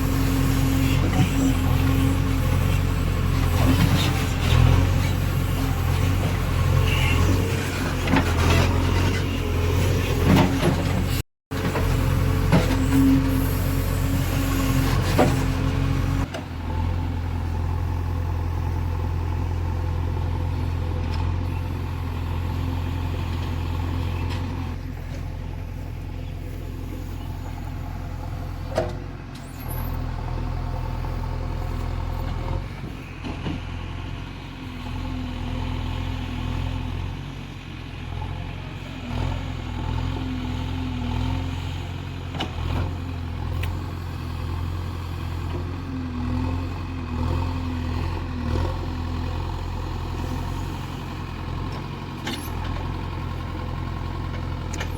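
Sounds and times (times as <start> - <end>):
diesel engine humming: 0.0 - 54.9.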